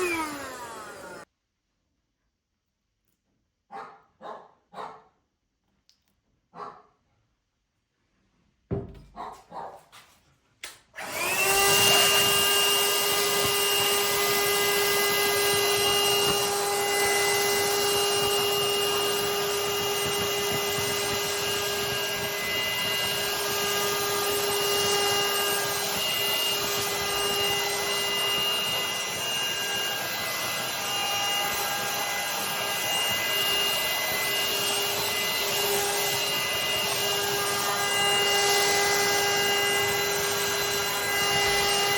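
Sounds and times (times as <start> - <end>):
handheld vacuum cleaner whining: 0.0 - 1.3, 11.0 - 41.9.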